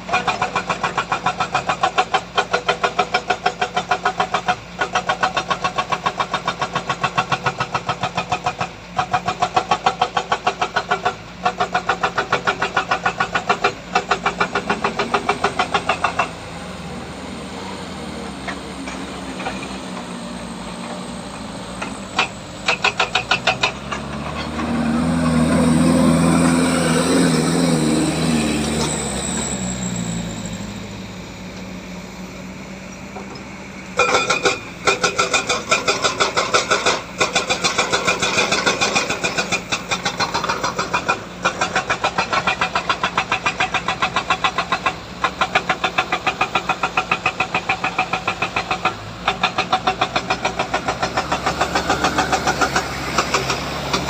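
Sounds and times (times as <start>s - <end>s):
steady diesel engine: 0.0s - 54.0s
engine revving: 11.9s - 31.1s, 34.0s - 54.0s.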